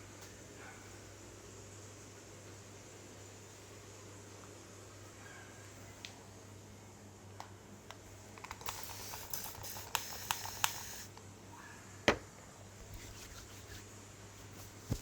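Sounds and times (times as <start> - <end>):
hands rustling through hair: 12.8 - 15.0.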